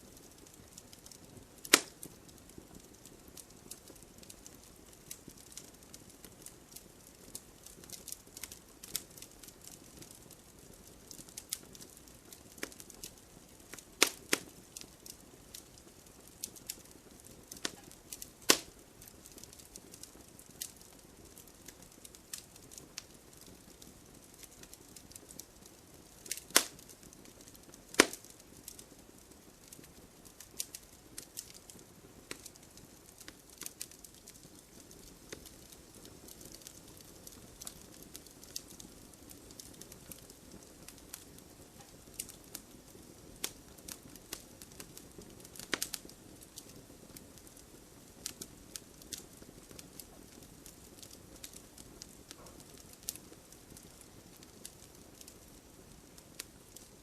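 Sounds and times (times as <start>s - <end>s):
fireplace logs crackling: 0.0s - 57.0s
hiss of flame: 0.1s - 3.5s, 13.7s - 56.9s
loud wood snaps: 1.7s - 2.0s, 14.0s - 14.2s, 18.5s - 18.7s, 26.3s - 26.8s, 27.9s - 28.3s.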